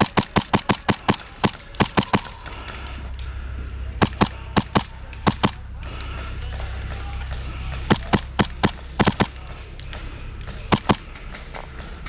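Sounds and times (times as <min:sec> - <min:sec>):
airsoft gun shots: 0:00.0 - 0:02.4, 0:04.0 - 0:05.6, 0:07.9 - 0:09.5, 0:10.7 - 0:11.1.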